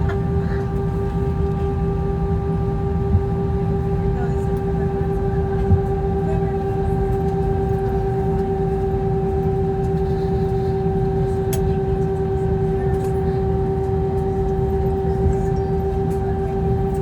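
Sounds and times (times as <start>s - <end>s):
airplane cabin rumble and hum: 0.0s - 17.0s.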